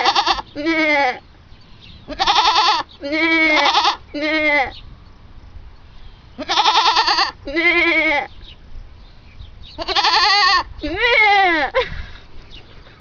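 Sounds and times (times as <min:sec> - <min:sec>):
goat bleating: 0:00.0 - 0:01.2, 0:02.1 - 0:04.8, 0:06.4 - 0:08.3, 0:09.8 - 0:11.7.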